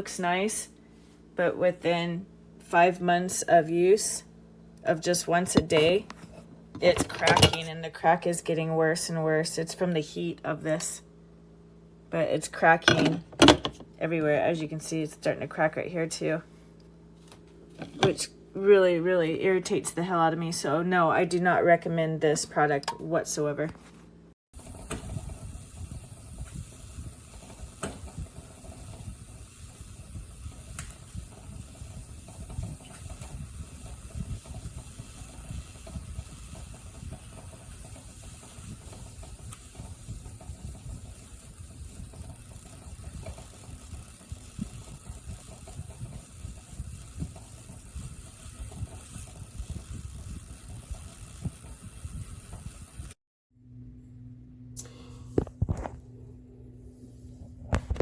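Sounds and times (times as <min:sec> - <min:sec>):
coffee maker hissing and gurgling: 0:24.6 - 0:53.2.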